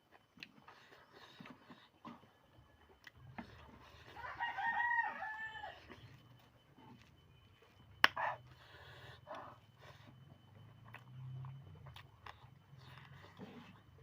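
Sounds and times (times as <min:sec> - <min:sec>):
small eating noises: 0:00.0 - 0:14.0
rooster crowing: 0:04.1 - 0:06.1.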